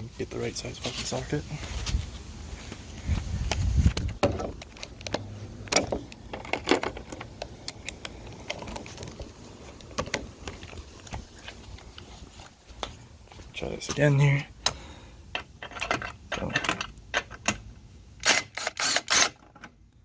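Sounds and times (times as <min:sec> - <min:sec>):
metal tools clinking: 0:04.3 - 0:09.1.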